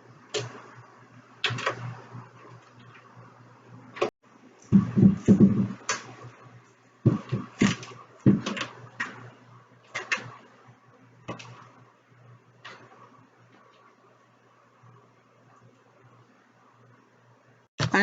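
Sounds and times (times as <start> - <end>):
knocks and taps on furniture: 4.7 - 6.0, 7.1 - 8.7.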